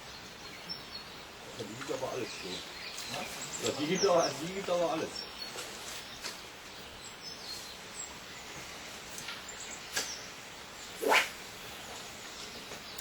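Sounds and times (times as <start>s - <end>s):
outdoor background noise: 0.0s - 13.0s.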